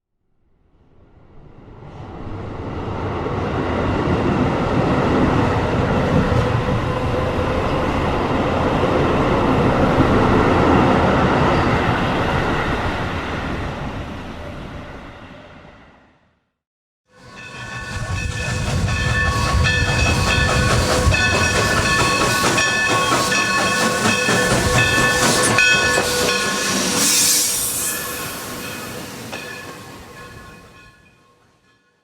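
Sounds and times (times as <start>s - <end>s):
train wheels rumbling on rails: 17.1s - 31.7s.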